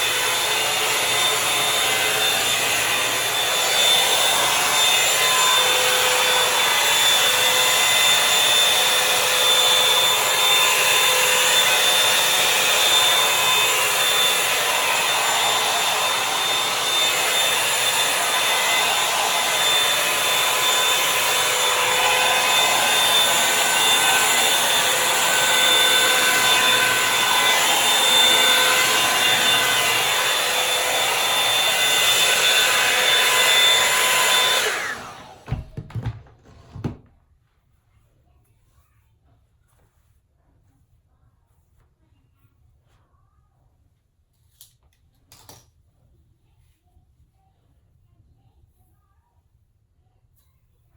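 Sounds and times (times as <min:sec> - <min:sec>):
hot-air brush blowing: 0:00.0 - 0:35.6.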